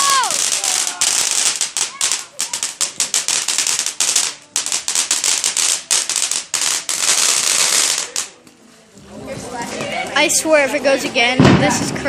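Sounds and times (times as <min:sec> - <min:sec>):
firework crackling pops: 0:00.0 - 0:08.4, 0:11.4 - 0:12.0.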